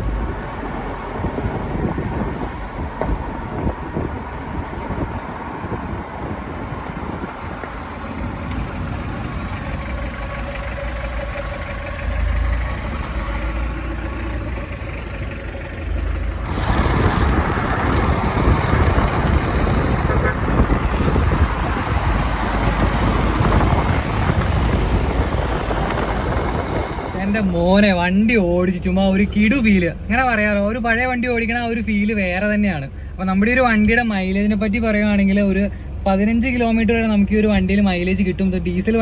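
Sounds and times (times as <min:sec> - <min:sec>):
diesel car engine rumbling: 0:00.0 - 0:39.0
loud rushing noise: 0:16.3 - 0:27.7.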